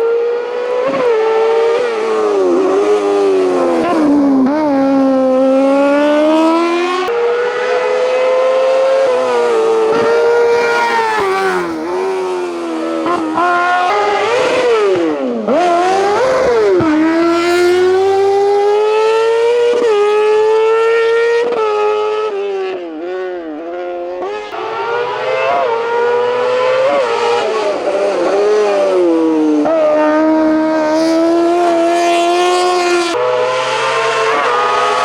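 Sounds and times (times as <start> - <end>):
race car engine shifting gears: 0.0 - 21.9, 22.9 - 35.0.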